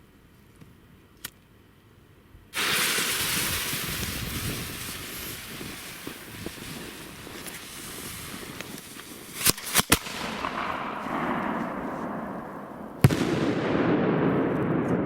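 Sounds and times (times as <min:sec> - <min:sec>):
firework loud bang: 0:02.6 - 0:15.0
sharp cracks: 0:07.2 - 0:15.0.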